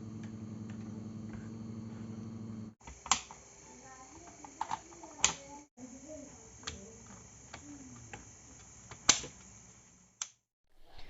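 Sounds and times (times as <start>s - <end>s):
small tools clicking and tapping: 4.1s - 5.5s.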